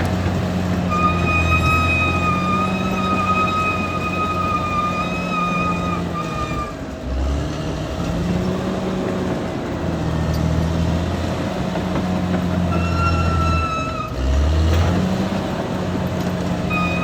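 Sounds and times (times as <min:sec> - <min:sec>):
bulldozer diesel engine running: 0:00.0 - 0:17.0
high steady squeal: 0:00.9 - 0:06.9, 0:12.7 - 0:14.2, 0:16.7 - 0:17.0.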